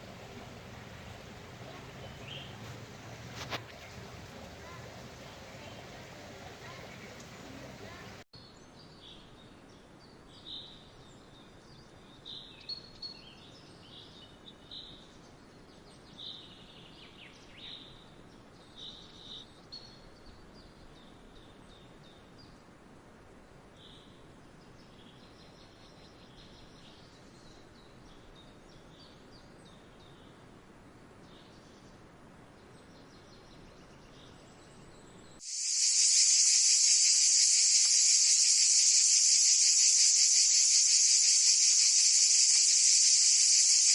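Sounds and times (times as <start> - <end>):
high-pitched insect chorus: 35.4 - 43.9.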